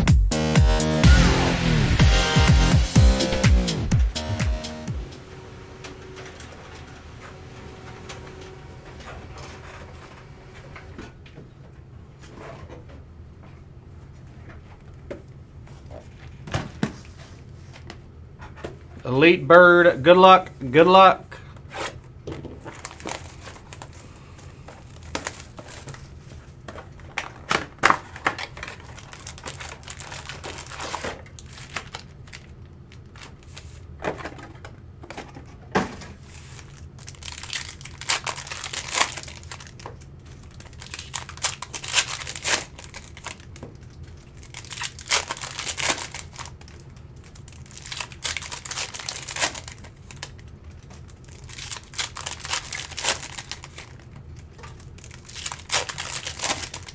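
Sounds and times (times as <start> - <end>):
plastic wrappers tearing and crinkling: 22.6 - 24.0, 27.2 - 33.7, 36.3 - 56.9.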